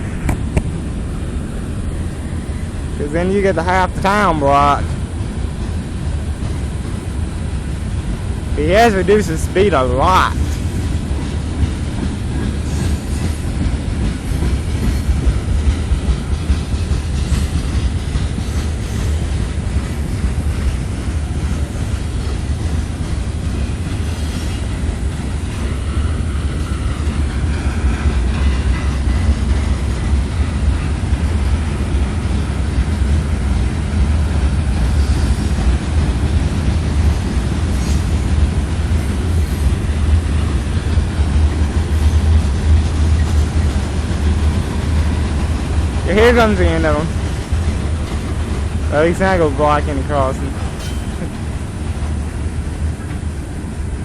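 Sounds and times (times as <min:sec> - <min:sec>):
freight train cars rolling: 0:00.0 - 0:54.0
wheels clicking over rail joints: 0:04.9 - 0:53.8.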